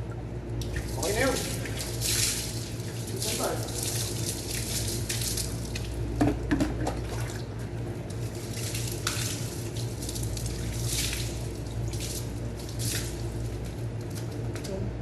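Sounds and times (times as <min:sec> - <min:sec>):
steady low hum: 0:00.0 - 0:15.0
water spraying on bicycle: 0:00.6 - 0:06.0, 0:08.1 - 0:14.3.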